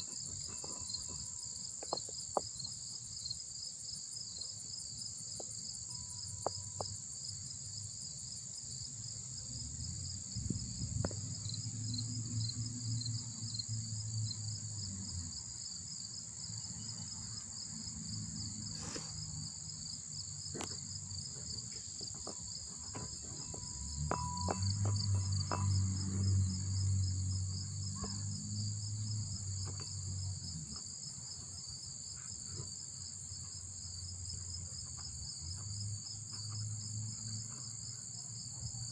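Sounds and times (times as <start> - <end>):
insects chirping: 0.0 - 38.9
low hum: 23.0 - 29.6.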